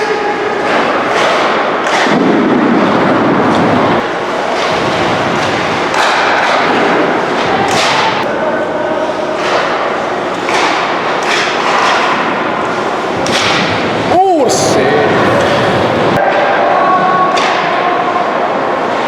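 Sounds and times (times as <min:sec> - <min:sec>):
arena crowd din: 0:14.0 - 0:18.8.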